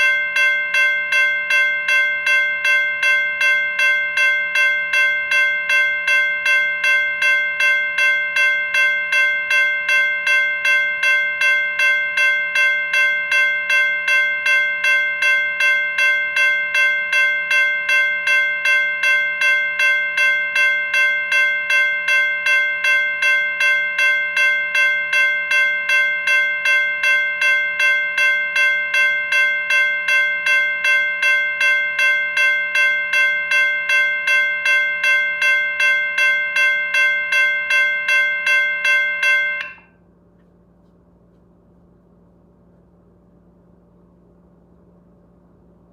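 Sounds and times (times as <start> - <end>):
locomotive bell ringing: 0.0 - 40.1.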